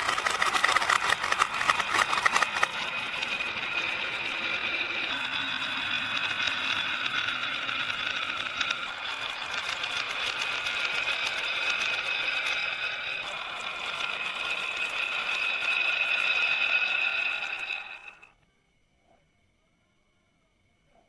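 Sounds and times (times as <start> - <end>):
marbles clicking and clattering: 0.0 - 18.3
marbles rolling on wooden track: 0.0 - 18.4.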